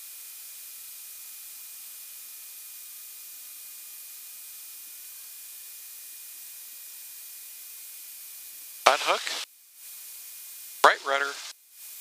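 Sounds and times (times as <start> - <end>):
steady electronic hiss: 8.8 - 12.0.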